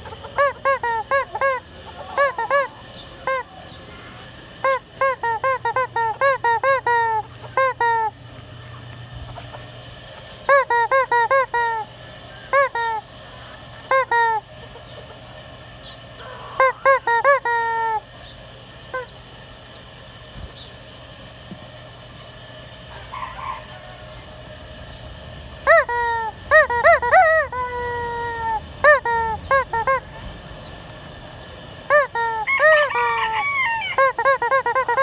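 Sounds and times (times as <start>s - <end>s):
rubber chicken toy squawking: 0.0s - 3.7s, 4.6s - 8.2s, 10.5s - 11.9s, 12.5s - 13.1s, 13.9s - 14.5s, 16.2s - 18.1s, 18.9s - 19.2s, 25.6s - 30.2s, 31.9s - 35.0s.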